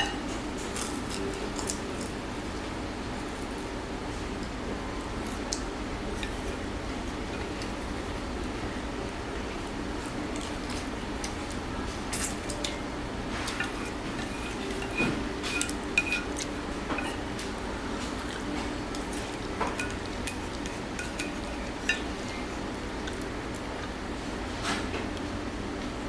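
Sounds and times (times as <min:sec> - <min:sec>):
dishes and tableware clinking: 0:00.0 - 0:02.1, 0:12.1 - 0:22.4
steady low hum: 0:00.0 - 0:26.0.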